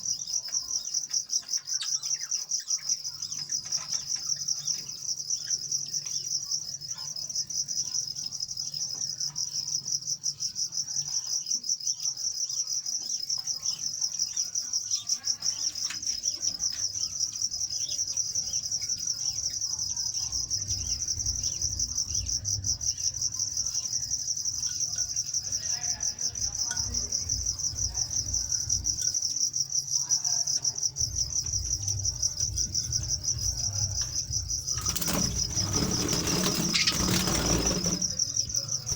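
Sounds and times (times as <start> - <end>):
faint bird chirps: 0.0 - 29.4
high-pitched insect trill: 0.0 - 38.9.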